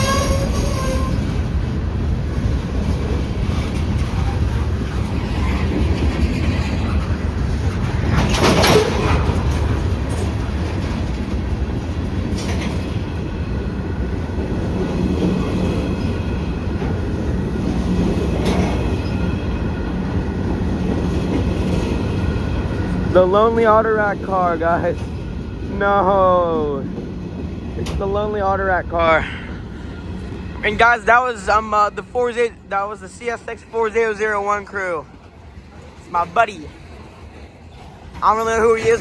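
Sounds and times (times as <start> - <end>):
train horn: 0.0 - 1.4
freight train rumble and clatter: 0.0 - 39.0.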